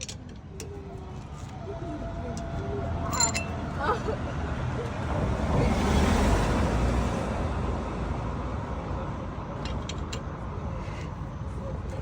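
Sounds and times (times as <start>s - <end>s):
vehicle passing on road: 0.9s - 10.5s.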